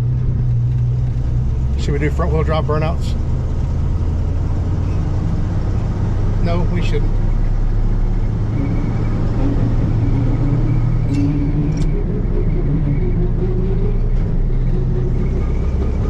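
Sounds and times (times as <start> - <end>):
thin drivetrain whine: 0.0 - 16.0
truck engine low rumble: 0.0 - 16.0.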